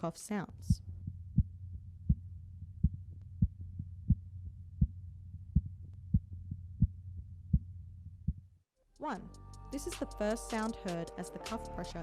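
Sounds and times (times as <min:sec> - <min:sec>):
heartbeat thumps through stethoscope: 0:00.7 - 0:08.5.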